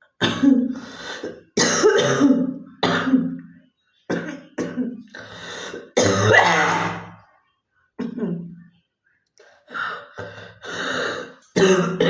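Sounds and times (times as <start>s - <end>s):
girl coughing: 0.2s - 3.4s, 5.9s - 7.0s, 11.6s - 12.0s.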